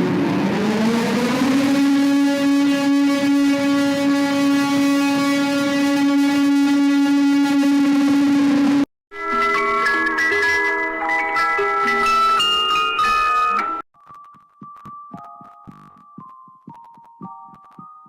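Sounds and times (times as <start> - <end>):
alarm tone: 1.4 - 10.4.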